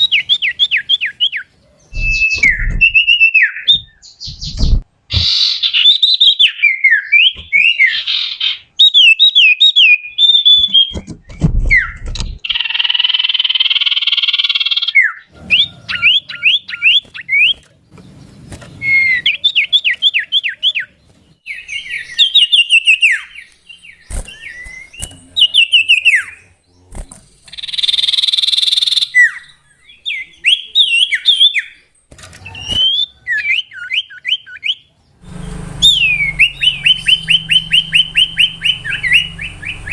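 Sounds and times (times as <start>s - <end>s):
bird whistling song: 0.0s - 26.6s, 27.4s - 39.9s
harsh buzzy bird call: 18.8s - 39.9s.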